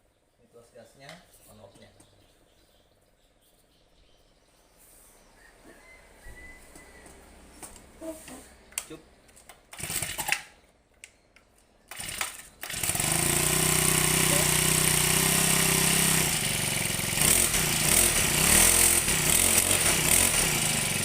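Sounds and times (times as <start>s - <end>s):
grass-cutter engine running: 9.8s - 10.4s, 11.9s - 21.0s
engine starter rasp: 9.8s - 10.5s.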